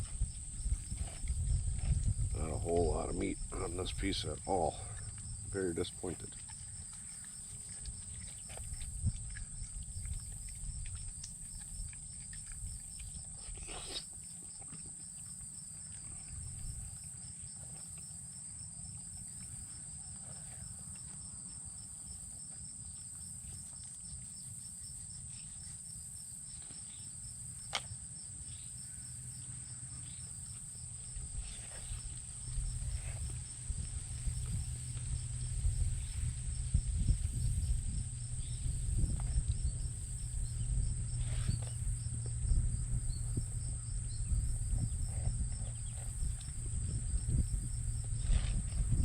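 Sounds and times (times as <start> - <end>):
crickets trilling: 0.0 - 49.0
low rumble: 32.4 - 49.0.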